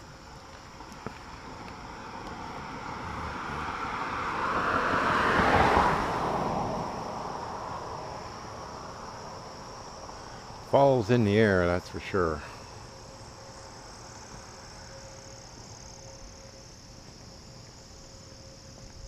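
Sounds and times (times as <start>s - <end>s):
crickets chirping: 0.0s - 19.0s
car passing by: 1.2s - 10.6s.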